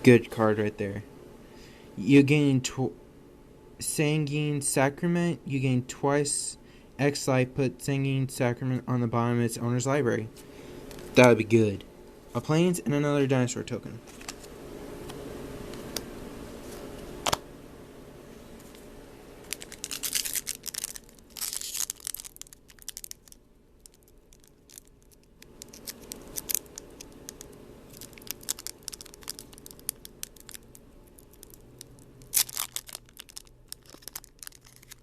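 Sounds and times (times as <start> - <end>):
foil wrapper tearing and crinkling: 19.4 - 35.0.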